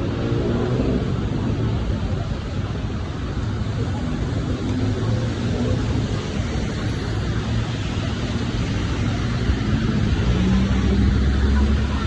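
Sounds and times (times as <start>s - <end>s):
traffic engines humming: 0.0s - 12.0s.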